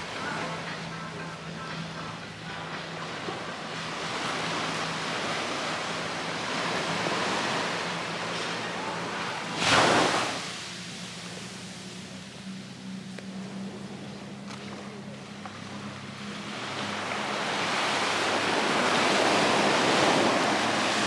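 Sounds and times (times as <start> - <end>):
surf washing onto beach: 3.7 - 12.1, 16.4 - 21.0.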